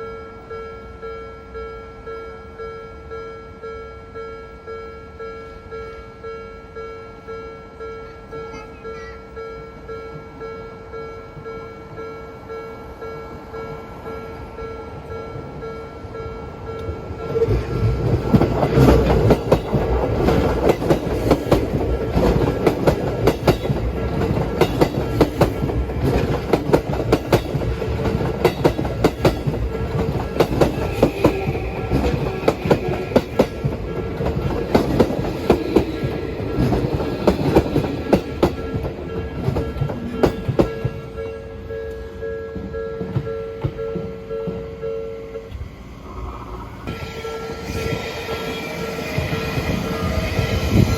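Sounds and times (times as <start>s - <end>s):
level-crossing alarm ringing: 0.0s - 46.1s, 46.8s - 50.9s
train wheels clattering over rail joints: 17.3s - 41.0s.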